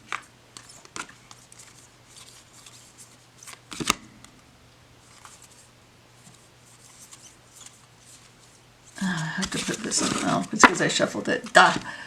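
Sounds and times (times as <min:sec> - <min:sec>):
cards sliding and rustling: 0:00.0 - 0:04.1, 0:05.0 - 0:11.9
cards tapping: 0:09.0 - 0:12.0.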